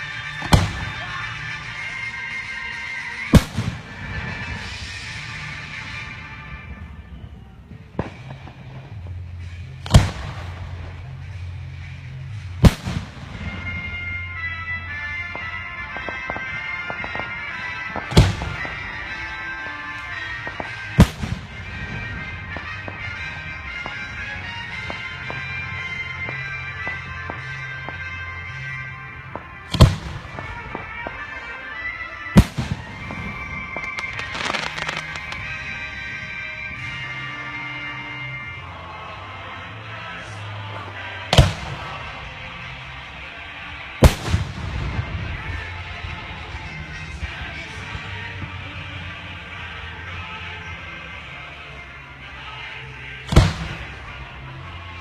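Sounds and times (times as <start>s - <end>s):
music playing: 0.0s - 55.0s
fireworks booms: 3.3s - 6.2s, 9.9s - 11.0s, 12.6s - 13.9s, 15.4s - 19.1s, 20.4s - 25.5s, 29.3s - 31.3s, 32.4s - 35.8s, 41.3s - 42.3s, 44.0s - 46.1s, 53.3s - 54.1s
firework shells bursting: 32.4s - 35.5s.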